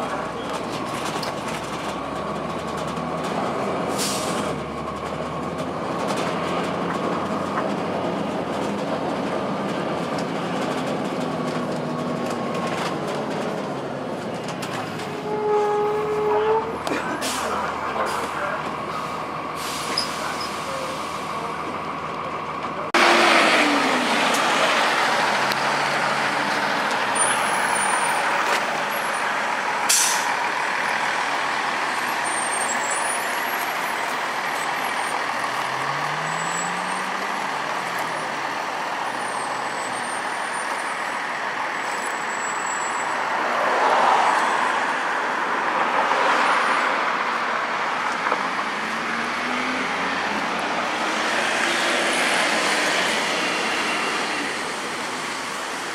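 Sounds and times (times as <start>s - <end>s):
diesel bus engine running: 0.0s - 15.1s, 16.2s - 42.6s
road noise: 0.0s - 55.9s.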